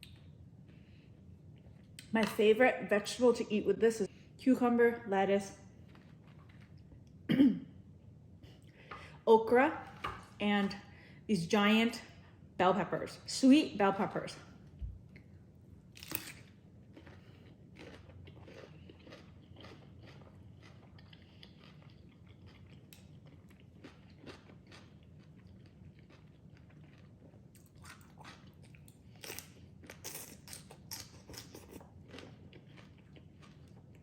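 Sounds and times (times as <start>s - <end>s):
person chewing crunchy vegetables: 5.8s - 7.1s, 15.9s - 34.0s.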